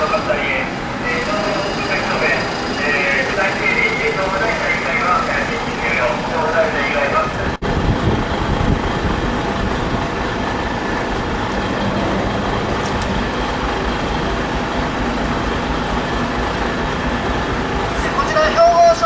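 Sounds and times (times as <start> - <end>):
fire engine pump rumbling: 0.0 - 19.0.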